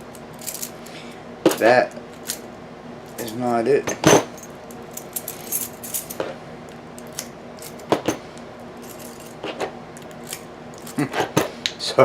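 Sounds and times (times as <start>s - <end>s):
metal keys clinking: 0.3s - 0.9s, 3.1s - 6.2s, 7.0s - 7.9s, 8.8s - 9.4s.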